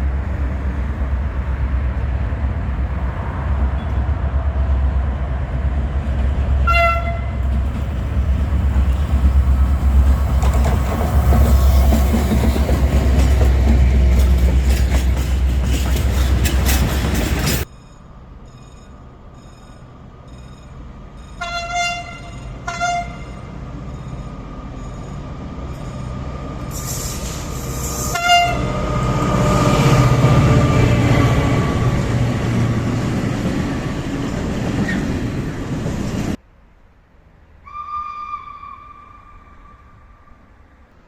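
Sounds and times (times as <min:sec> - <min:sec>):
passing train running noise: 0:00.0 - 0:41.0
train horn blasts: 0:06.6 - 0:07.5, 0:21.4 - 0:23.5, 0:27.8 - 0:30.7, 0:37.6 - 0:40.3
steady horn tone: 0:28.0 - 0:29.5.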